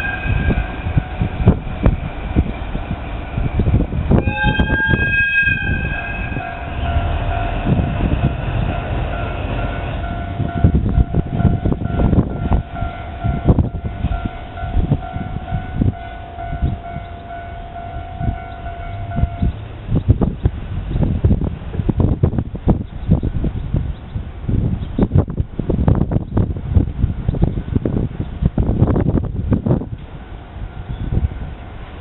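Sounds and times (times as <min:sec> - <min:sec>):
locomotive horn blast: 0:00.0 - 0:01.6, 0:04.1 - 0:11.1
train running by ringing: 0:00.0 - 0:21.1, 0:27.2 - 0:32.0.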